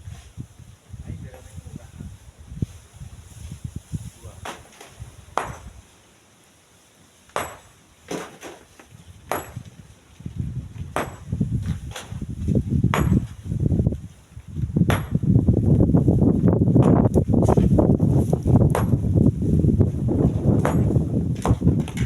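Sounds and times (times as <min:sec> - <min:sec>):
wind rumbling on microphone: 0:00.0 - 0:05.9, 0:08.9 - 0:22.0
metal tool striking stone: 0:05.4 - 0:05.7, 0:07.4 - 0:08.3, 0:09.3 - 0:09.7, 0:11.0 - 0:11.3, 0:12.9 - 0:13.4, 0:14.9 - 0:15.2, 0:20.6 - 0:22.0.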